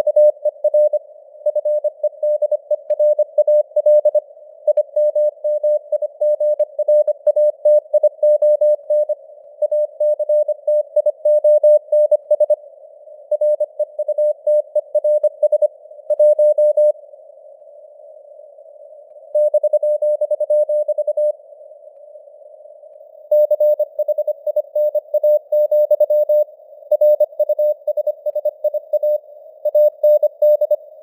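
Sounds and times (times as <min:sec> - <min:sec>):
morse code beeps: 0:23.3 - 0:30.8.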